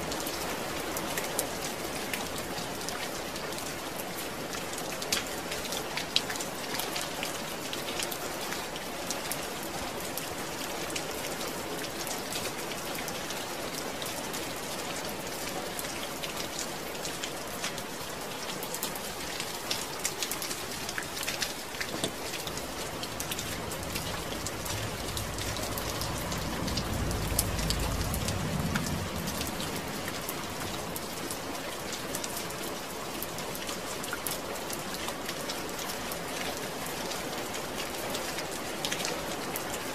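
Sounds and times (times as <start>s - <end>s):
steady rain falling: 0.0s - 39.9s
low rumble: 22.1s - 31.8s.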